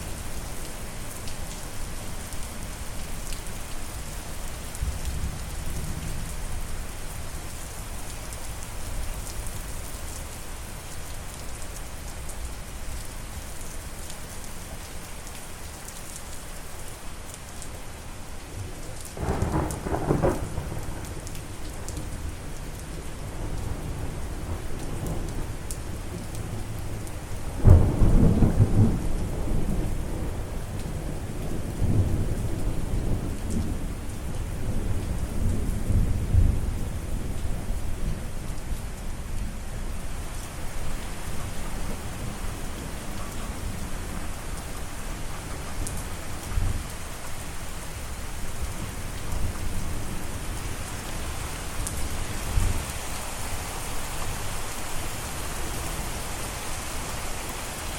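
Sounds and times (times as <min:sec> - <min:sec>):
steady rainfall: 0:00.0 - 0:57.9
thunder rumbling: 0:19.2 - 0:21.2.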